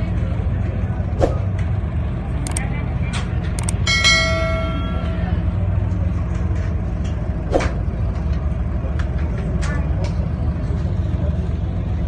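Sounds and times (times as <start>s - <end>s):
boat engine rumble: 0.0s - 12.0s
metallic bell-like ring: 3.8s - 5.6s.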